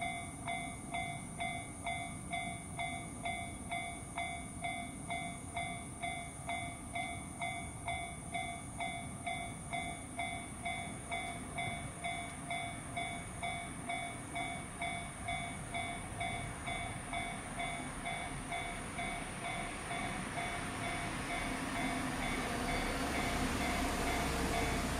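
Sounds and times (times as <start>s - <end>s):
freight train rumbling: 0.0s - 24.9s
level-crossing bell dinging: 0.0s - 24.9s.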